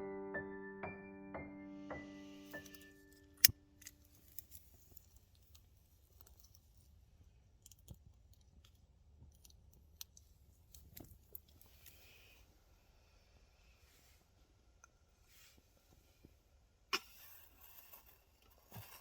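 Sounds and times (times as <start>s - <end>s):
piano music: 0.0s - 3.9s
small clicks and handling noises: 2.6s - 12.2s.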